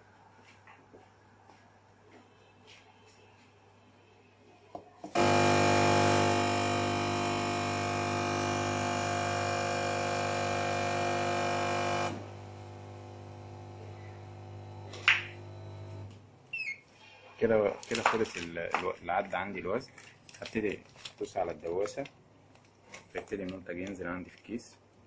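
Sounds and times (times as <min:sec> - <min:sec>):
vibratory feeder buzzing: 0:05.1 - 0:16.1.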